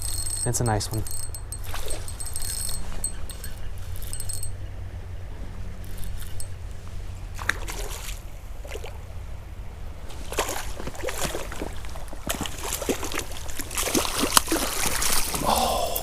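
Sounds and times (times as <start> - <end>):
steady low rumble: 0.0 - 13.8
fish splashing in shallow water: 1.5 - 4.4, 7.3 - 9.2, 10.0 - 15.6.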